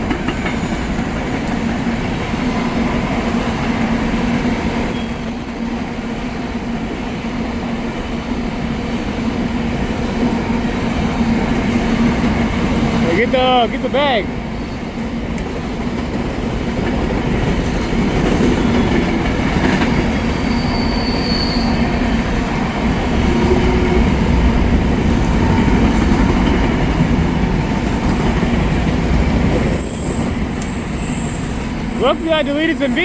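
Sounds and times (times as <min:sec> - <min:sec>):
high wheel squeal: 0:00.0 - 0:12.8, 0:16.6 - 0:22.1, 0:27.4 - 0:33.0
train wheels rumbling on rail: 0:00.0 - 0:33.0.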